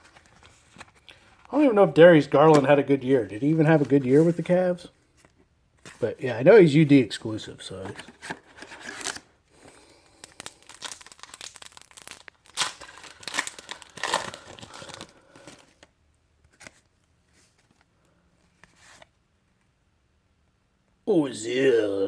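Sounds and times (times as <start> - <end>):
faint handling sounds: 0.0 - 11.4, 12.9 - 19.7
wrapper tearing and crinkling: 8.2 - 9.3, 10.1 - 15.9.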